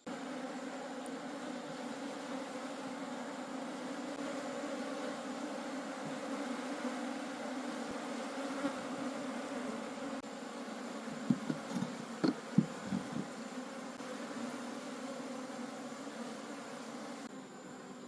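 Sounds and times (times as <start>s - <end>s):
bees buzzing: 0.0s - 18.0s
short knocks: 11.2s - 13.3s.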